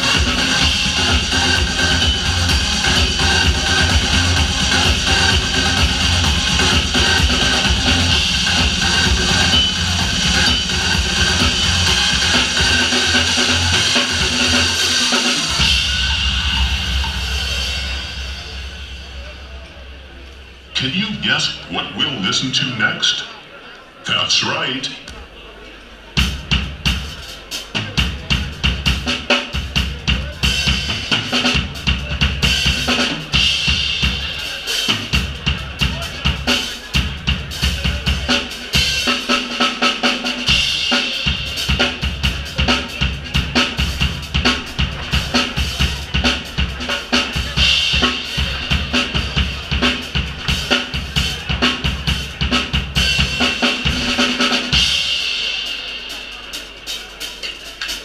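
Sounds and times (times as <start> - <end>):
live drum kit: 0.0 - 21.6, 26.0 - 58.0
deep bass line: 0.0 - 22.0, 41.4 - 54.2.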